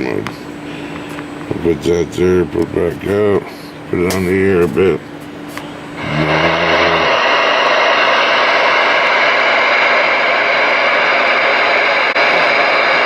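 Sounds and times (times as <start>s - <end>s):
low hum: 5.8s - 13.0s.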